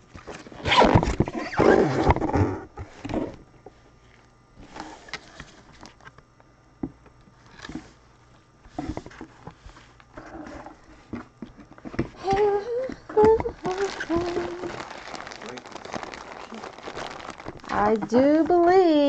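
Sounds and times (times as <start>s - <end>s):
cards and packaging rustling: 11.6s - 19.0s.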